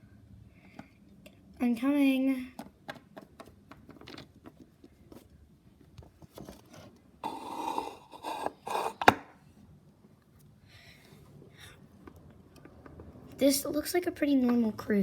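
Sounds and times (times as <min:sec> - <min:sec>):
plastic scraping rubs: 0:06.1 - 0:09.2.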